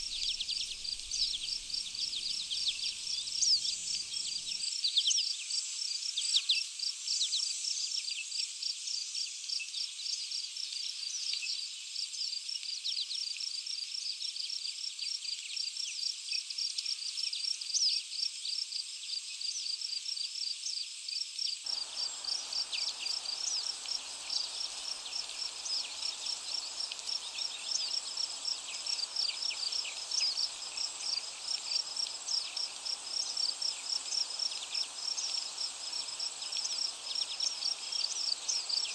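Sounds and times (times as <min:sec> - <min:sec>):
high-pitched insect chirping: 0:00.0 - 0:04.5, 0:21.7 - 0:38.9.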